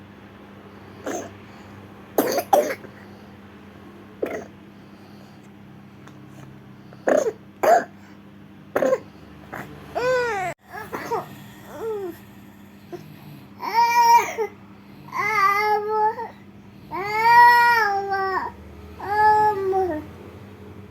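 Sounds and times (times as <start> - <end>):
short coughs: 7.0 - 8.0, 8.8 - 9.7.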